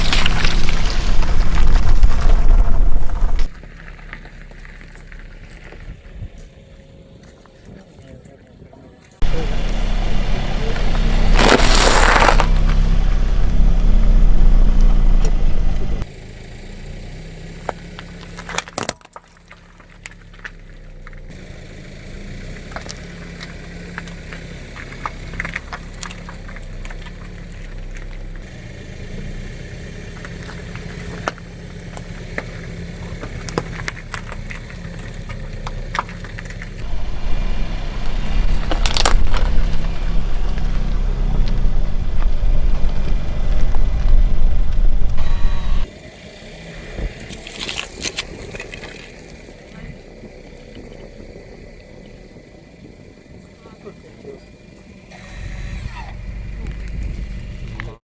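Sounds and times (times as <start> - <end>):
cracks and crackles of breaking objects: 0.0 - 5.9, 11.4 - 12.8, 17.6 - 21.3, 30.2 - 36.8, 38.6 - 39.9, 47.2 - 49.4
car engine running: 0.0 - 8.2, 9.1 - 58.0
objects crunching under tyre: 0.0 - 16.1, 16.9 - 53.5.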